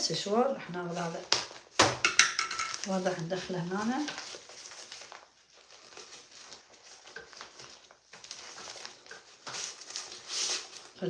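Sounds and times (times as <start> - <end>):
faint rustling: 2.6 - 11.0.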